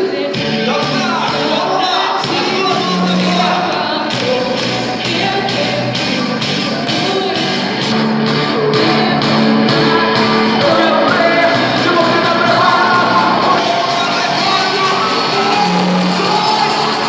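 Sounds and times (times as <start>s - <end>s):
people singing: 0.0s - 17.0s
rock band playing: 0.4s - 17.0s.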